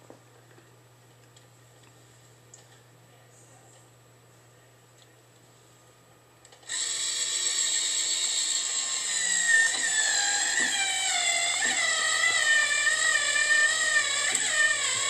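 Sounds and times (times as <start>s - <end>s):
cordless drill motor whine: 6.6s - 15.0s.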